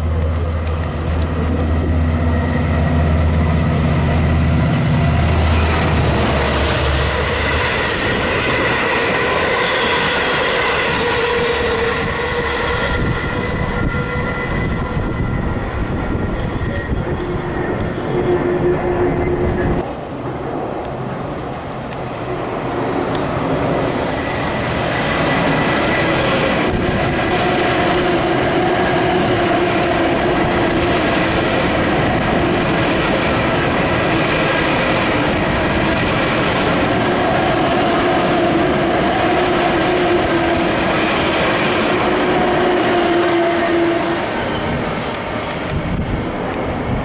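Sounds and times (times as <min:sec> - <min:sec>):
running gear whine: 0:00.0 - 0:19.8
train rumbling on rails: 0:00.0 - 0:47.0
train wheel clatter: 0:23.0 - 0:43.2.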